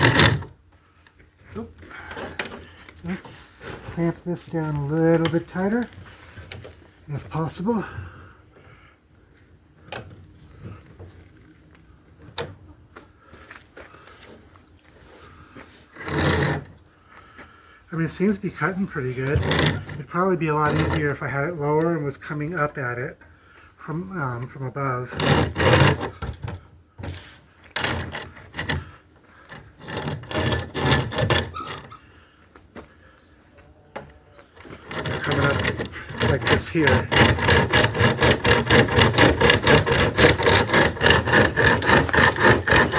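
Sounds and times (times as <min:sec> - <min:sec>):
chain saw rasping through wood: 0:00.0 - 0:00.6, 0:01.4 - 0:06.7, 0:15.2 - 0:16.9, 0:18.0 - 0:23.0, 0:24.4 - 0:32.1, 0:34.5 - 0:42.9.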